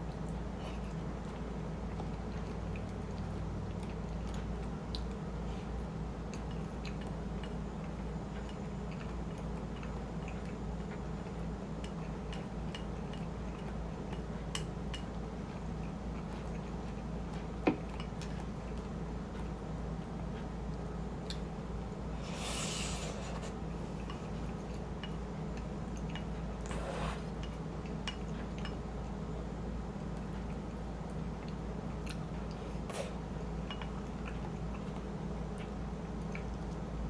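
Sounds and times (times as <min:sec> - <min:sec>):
steady low hum: 0:00.0 - 0:37.0
mouth clicks of chewing: 0:31.4 - 0:36.8.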